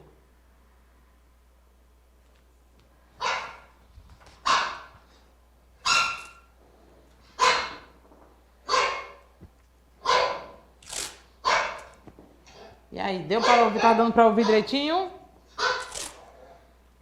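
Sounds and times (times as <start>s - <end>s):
small dog barking: 3.2s - 3.7s, 4.4s - 4.9s, 5.8s - 6.4s, 7.4s - 7.9s, 8.7s - 9.3s, 10.0s - 10.6s, 11.4s - 11.9s, 13.4s - 14.7s, 15.6s - 16.6s.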